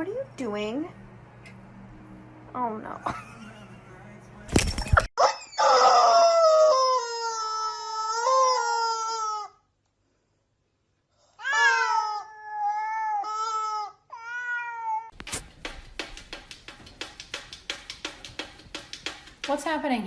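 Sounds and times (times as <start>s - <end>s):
cat yowling: 11.4s - 15.1s.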